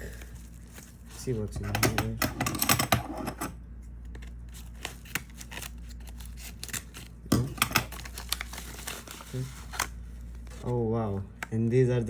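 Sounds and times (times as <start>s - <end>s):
plastic packet crinkling: 4.6s - 10.8s.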